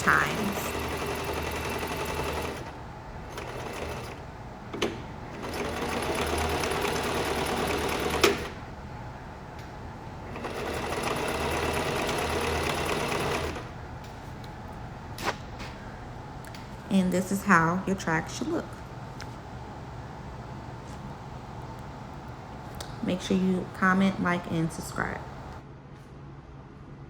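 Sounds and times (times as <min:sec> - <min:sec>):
sewing machine stitching: 0:00.0 - 0:04.2, 0:04.8 - 0:08.6, 0:10.3 - 0:13.7.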